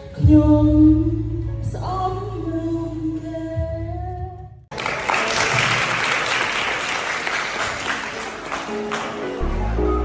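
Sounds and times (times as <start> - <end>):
audience applause: 4.7 - 10.0
backing music: 8.1 - 10.0.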